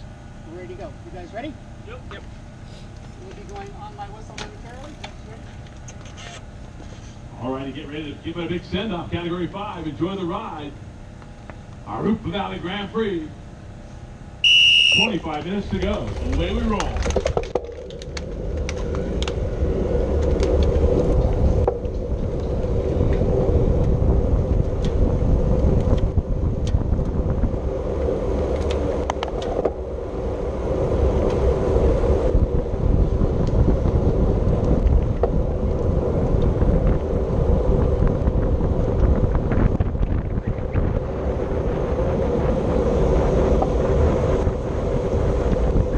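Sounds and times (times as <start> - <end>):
road and drivetrain rumble: 0.0 - 45.9
wind rushing over microphone: 14.4 - 45.9.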